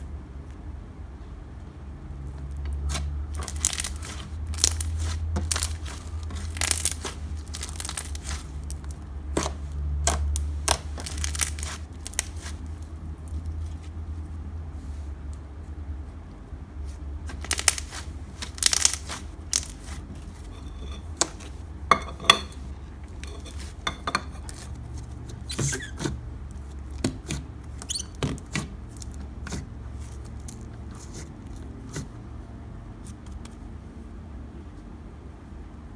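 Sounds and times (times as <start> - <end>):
hands squishing slime: 2.8 - 13.9, 16.8 - 32.1.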